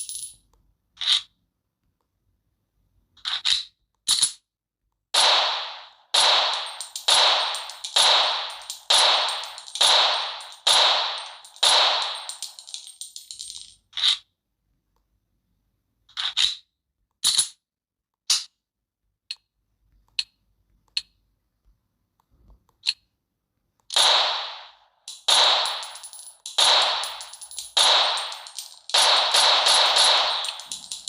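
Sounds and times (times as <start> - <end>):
pistol shots with echo: 5.2 - 13.0, 23.9 - 31.0.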